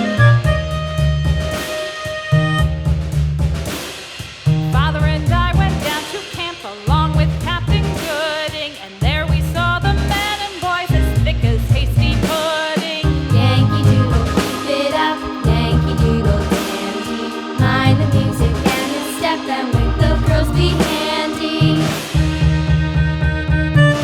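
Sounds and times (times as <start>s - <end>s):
repeating bass pattern: 0.0s - 1.6s, 13.0s - 24.0s
melody with vibrato: 0.0s - 2.6s, 13.0s - 22.6s
drums: 0.0s - 24.0s.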